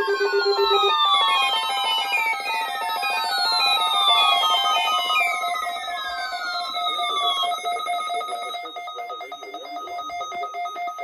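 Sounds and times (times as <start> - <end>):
falling electronic pitch sweeps: 0.0 - 8.6
steady electronic tones fluttering: 0.0 - 10.7.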